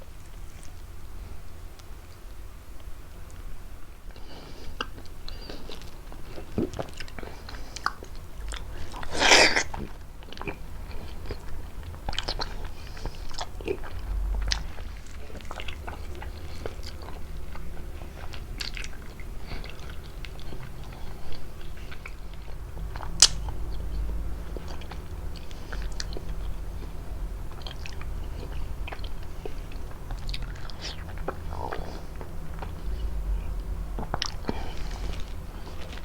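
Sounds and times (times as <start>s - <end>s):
wet chewing of fruit: 4.1s - 36.0s.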